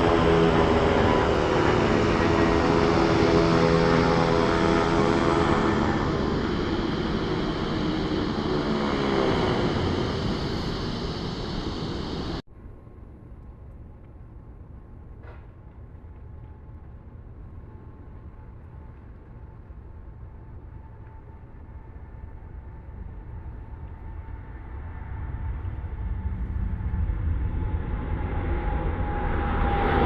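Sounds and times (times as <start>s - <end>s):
low rumble: 0.0s - 12.4s
airliner engine noise: 0.0s - 12.5s, 20.6s - 30.0s.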